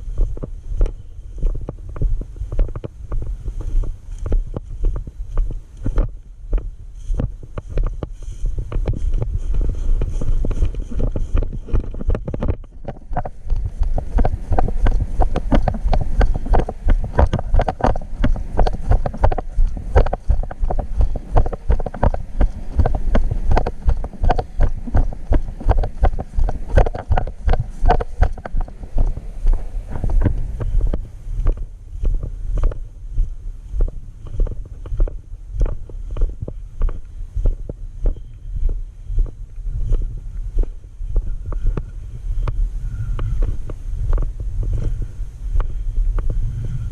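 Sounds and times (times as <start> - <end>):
wind buffeting microphone: 0.0 - 46.9
rhythmic thumps: 7.2 - 32.3.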